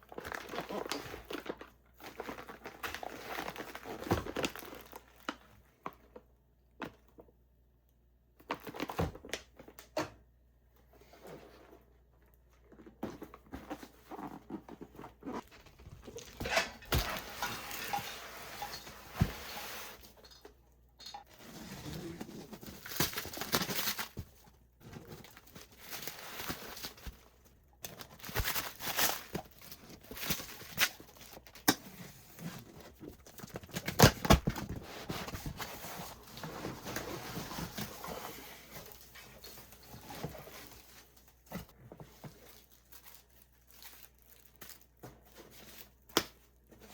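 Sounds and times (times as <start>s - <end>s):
cardboard packaging knocks and rustles: 21.6s - 31.7s, 32.3s - 38.1s.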